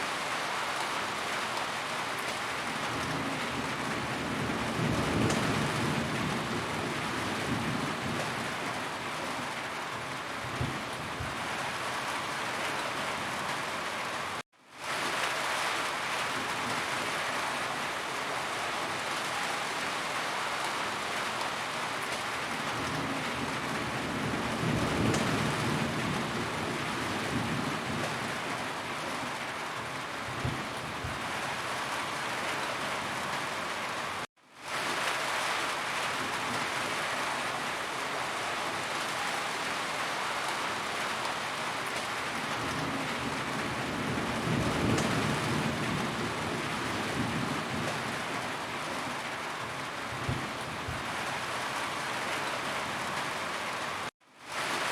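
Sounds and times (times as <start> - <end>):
heavy rain drumming on a roof: 0.0 - 54.9
thunder rumble: 22.7 - 28.6, 42.4 - 48.5, 50.1 - 51.4.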